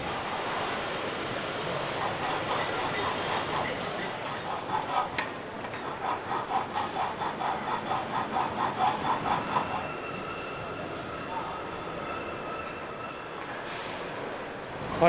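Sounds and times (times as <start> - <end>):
hand saw cutting: 1.7 - 9.9.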